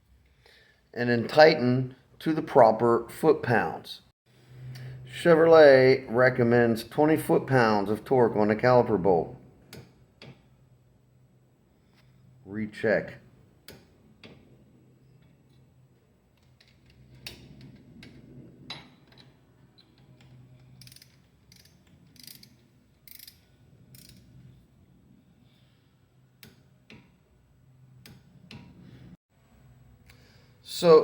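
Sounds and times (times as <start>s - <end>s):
torque wrench clicking: 19.8s - 24.2s.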